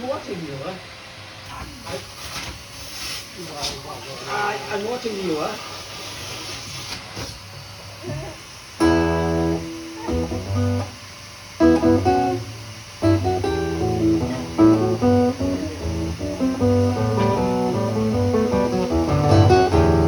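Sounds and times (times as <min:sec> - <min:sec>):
plucked string instrument music: 0:08.8 - 0:10.9, 0:11.6 - 0:20.0.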